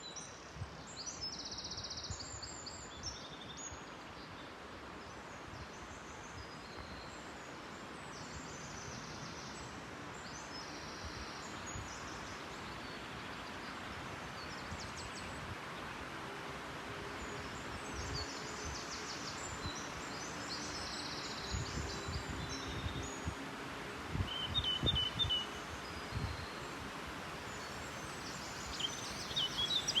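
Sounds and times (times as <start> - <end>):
wind through trees: 0.0 - 30.0
small birds singing: 17.1 - 30.0.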